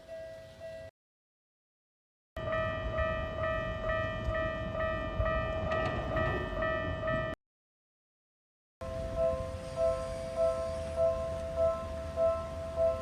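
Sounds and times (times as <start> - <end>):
level-crossing warning bell: 0.0 - 0.9, 2.4 - 7.4, 8.8 - 13.0.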